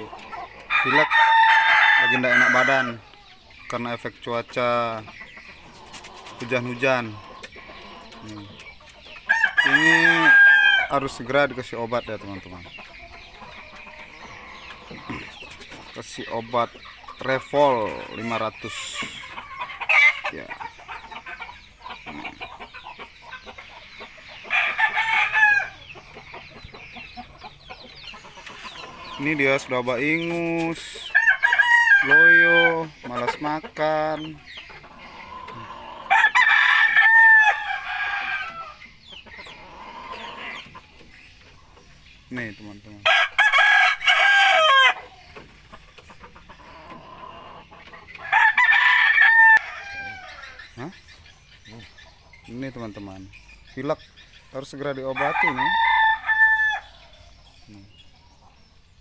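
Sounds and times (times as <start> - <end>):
chickens clucking: 0.0 - 59.0
rooster crowing: 0.7 - 3.0, 9.3 - 11.1, 24.5 - 25.9, 31.0 - 32.8, 36.0 - 38.8, 43.1 - 45.0, 48.2 - 50.6, 55.2 - 57.1.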